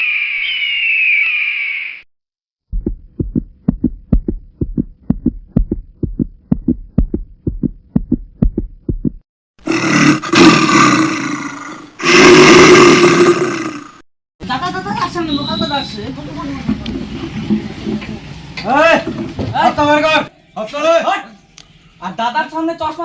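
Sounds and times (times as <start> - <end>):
heartbeat thudding: 2.7 - 9.2
loud roar: 9.6 - 14.0.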